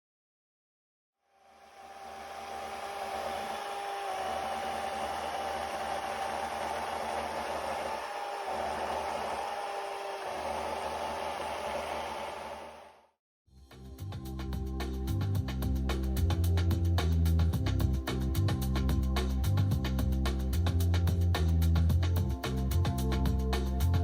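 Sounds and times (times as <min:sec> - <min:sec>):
electric motor whining: 0:01.5 - 0:13.0.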